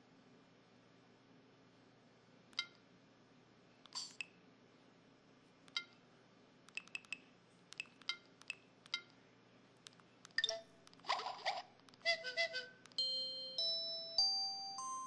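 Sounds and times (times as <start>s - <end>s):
mobile phone keypad beeps: 6.7s - 7.2s.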